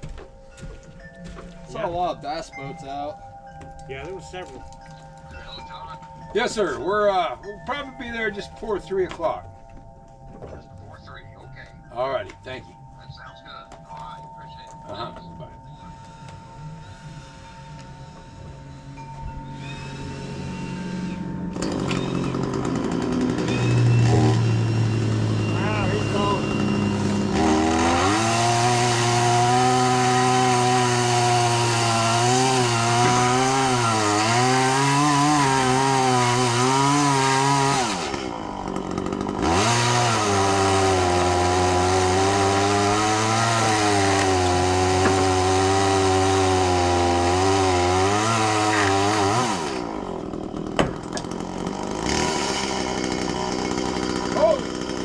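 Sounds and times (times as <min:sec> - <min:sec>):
chainsaw cutting wood: 0:16.0 - 0:55.0.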